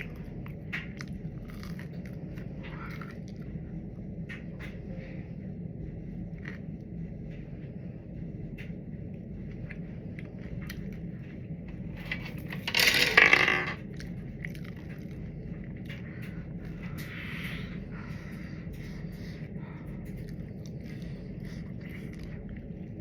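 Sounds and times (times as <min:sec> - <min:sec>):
chewing with wet clicks: 0:00.0 - 0:03.6, 0:13.9 - 0:23.0
steady low hum: 0:00.0 - 0:23.0
loud breathy rush: 0:16.0 - 0:23.0.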